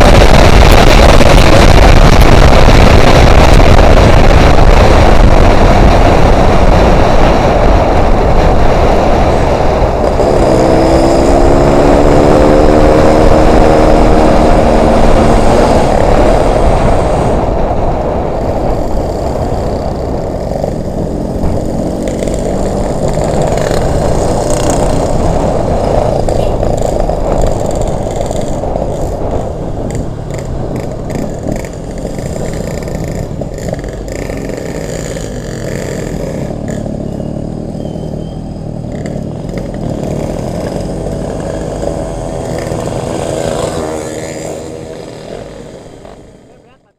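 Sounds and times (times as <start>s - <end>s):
wind rush on microphone: 0.0s - 46.5s
two-stroke motorcycle engine running: 18.4s - 46.9s.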